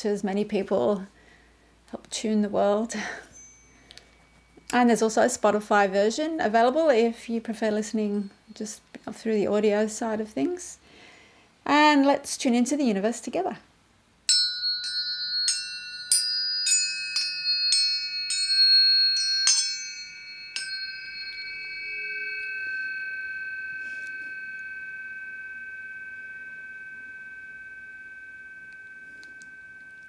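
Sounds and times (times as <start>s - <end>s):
bell-like struck metal tones: 3.2s - 5.1s, 14.3s - 30.0s.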